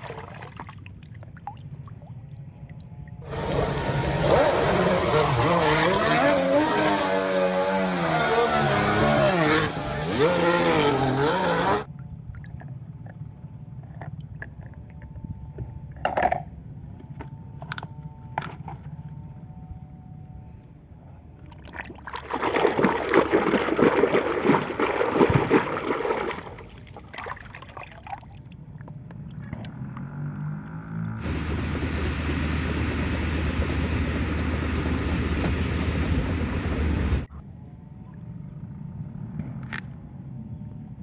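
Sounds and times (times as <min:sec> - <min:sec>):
water pouring and splashing: 0:00.0 - 0:02.5, 0:21.6 - 0:28.5.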